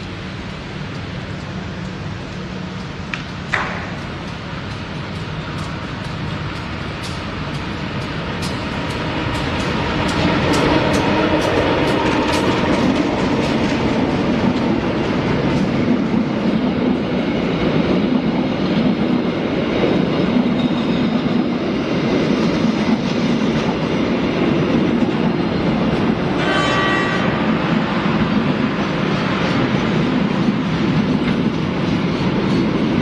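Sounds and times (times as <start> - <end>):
train rumble and drone: 0.0 - 33.0
train wheels clicking over rail joints: 0.0 - 33.0.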